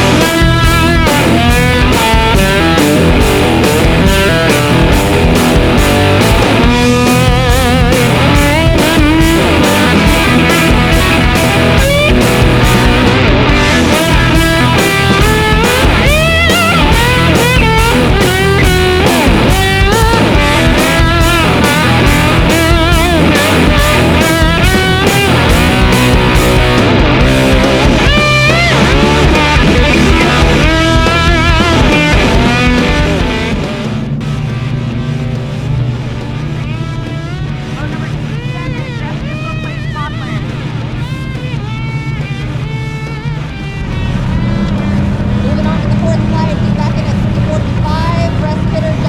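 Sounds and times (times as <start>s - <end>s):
rock music with electric guitar: 0.0s - 49.0s.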